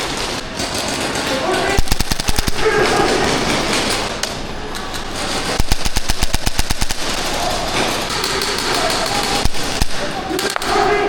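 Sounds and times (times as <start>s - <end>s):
airsoft gun firing: 1.8s - 4.0s, 5.4s - 10.9s.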